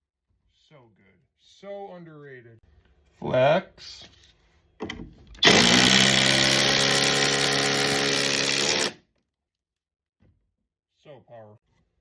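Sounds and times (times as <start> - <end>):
impact driver running: 5.4 - 9.0.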